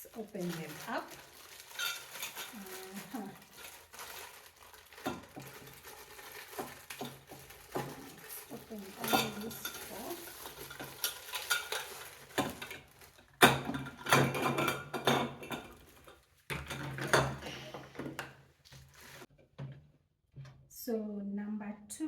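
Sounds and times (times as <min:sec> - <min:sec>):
steel rods clinking: 0:01.7 - 0:02.6, 0:07.0 - 0:17.4.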